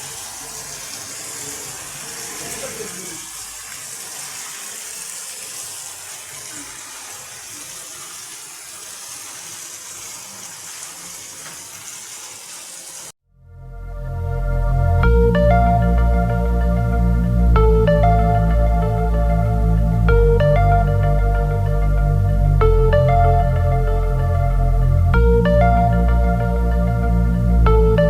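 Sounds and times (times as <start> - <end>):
rain falling: 0.0 - 13.1.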